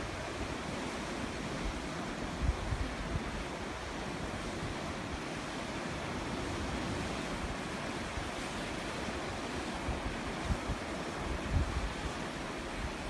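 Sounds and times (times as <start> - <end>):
sea waves washing on shore: 0.0 - 13.0
wind buffeting microphone: 9.8 - 13.0.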